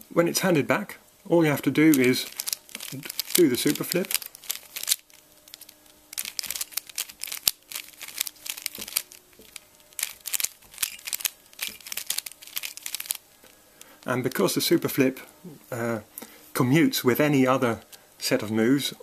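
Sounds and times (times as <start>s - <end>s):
puzzle cube layers clicking: 1.8s - 13.2s.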